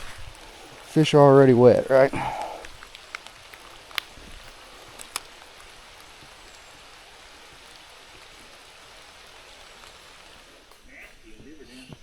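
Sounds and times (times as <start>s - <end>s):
light rain falling: 0.0s - 12.0s
sharp tick: 2.3s - 6.8s.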